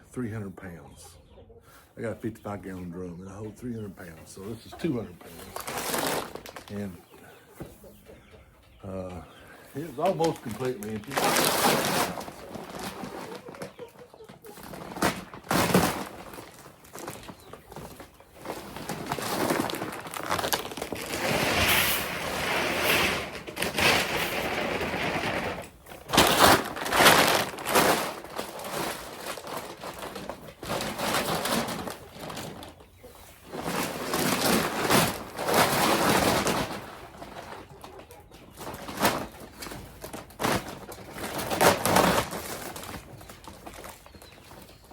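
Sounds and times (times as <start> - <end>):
birds calling: 0.0 - 21.2
pellets rattling into drum: 5.3 - 6.9, 9.8 - 13.7, 14.6 - 32.8, 33.4 - 37.8, 38.6 - 44.9.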